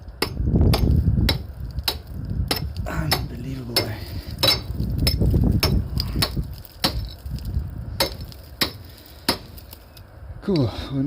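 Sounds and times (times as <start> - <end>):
hammer striking concrete: 0.2 - 7.2, 8.0 - 9.7.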